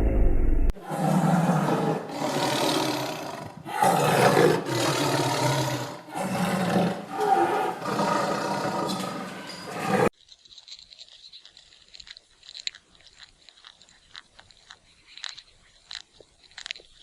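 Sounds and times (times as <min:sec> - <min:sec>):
large animal roaring: 0:00.8 - 0:10.1.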